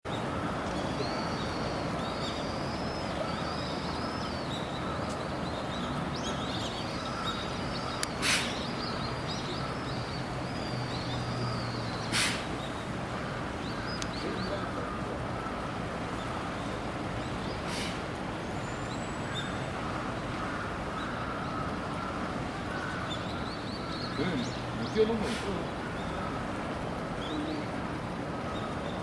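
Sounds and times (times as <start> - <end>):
small birds chirping: 0.1 - 29.0
sharp hissing bursts: 8.0 - 8.8, 12.1 - 12.7, 17.6 - 18.1.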